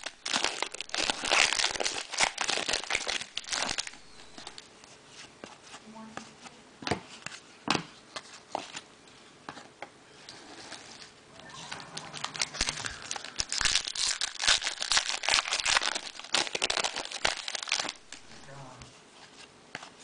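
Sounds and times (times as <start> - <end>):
foil wrappers crinkling and tearing: 0.0 - 4.7, 12.1 - 18.6.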